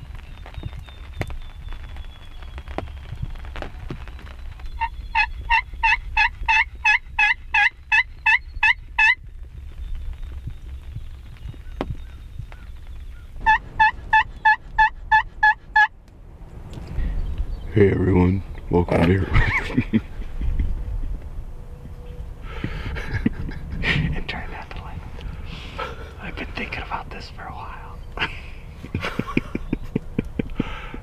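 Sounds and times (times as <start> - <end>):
turkey yelping: 4.8 - 9.2, 13.1 - 15.9.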